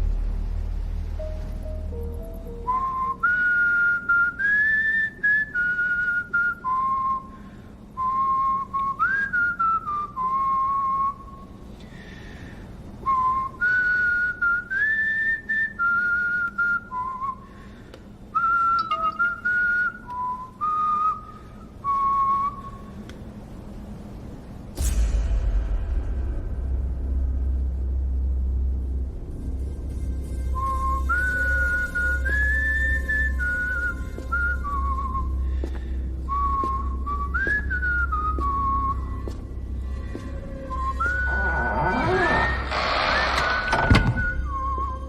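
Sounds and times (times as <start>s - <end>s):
person whistling a melody: 2.5s - 7.4s, 8.0s - 11.5s, 13.1s - 17.5s, 18.4s - 23.0s, 30.5s - 42.6s, 44.1s - 45.0s.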